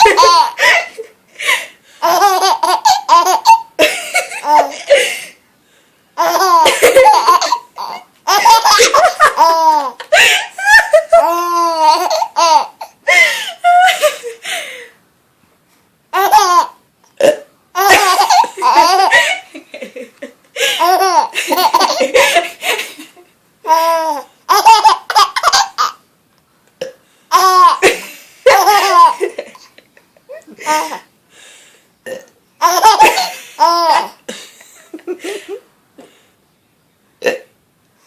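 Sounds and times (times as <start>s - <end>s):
baby laughing: 0.0s - 1.1s, 2.0s - 5.2s, 6.2s - 14.3s, 16.1s - 16.8s, 17.8s - 19.5s, 20.6s - 23.0s, 23.7s - 26.0s, 27.3s - 31.1s, 32.6s - 34.3s.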